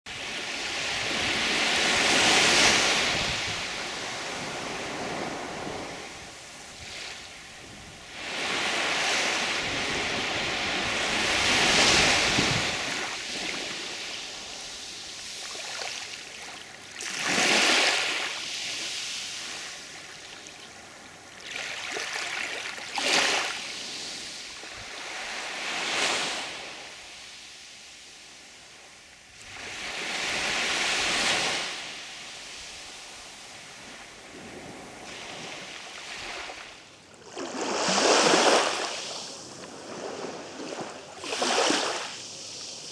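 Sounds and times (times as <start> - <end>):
sea waves breaking: 0.1 - 14.7, 34.4 - 42.3.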